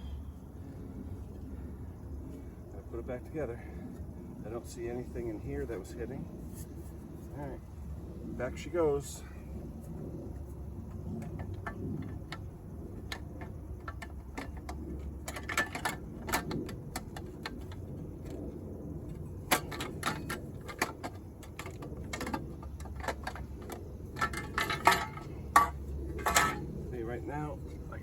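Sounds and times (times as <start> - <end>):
metal parts clattering: 19.5 - 26.7.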